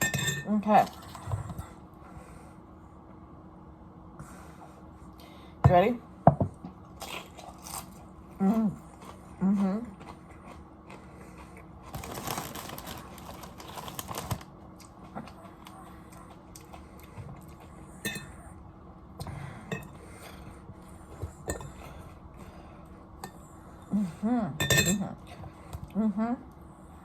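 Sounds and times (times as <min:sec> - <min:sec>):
chip crunching and chewing: 0:06.8 - 0:17.8.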